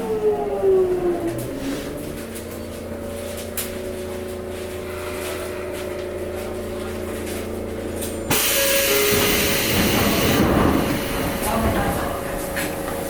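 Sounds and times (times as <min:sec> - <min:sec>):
train equipment humming: 0:00.0 - 0:13.0
train doors opening with hiss: 0:08.3 - 0:13.0.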